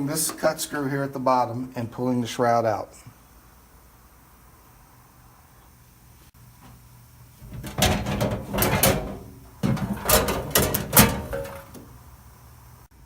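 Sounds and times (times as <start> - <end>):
metal panel scraping and rattling: 7.4 - 11.9.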